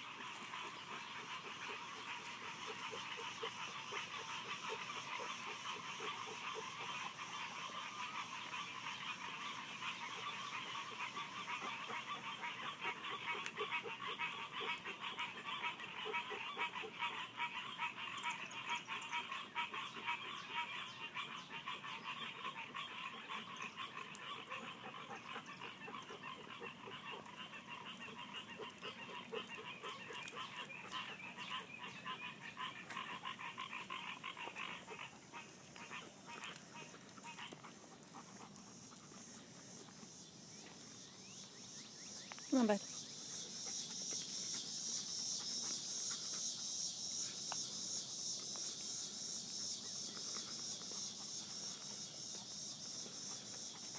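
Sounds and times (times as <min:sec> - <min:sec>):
frogs chorus trilling: 0:00.0 - 0:53.9.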